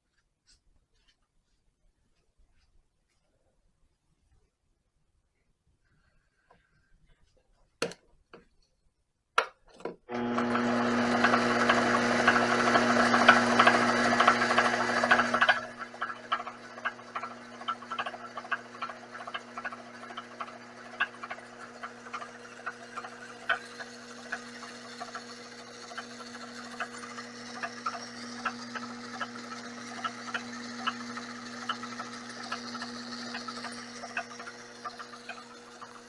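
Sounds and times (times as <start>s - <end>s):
lathe humming: 10.1s - 36.0s.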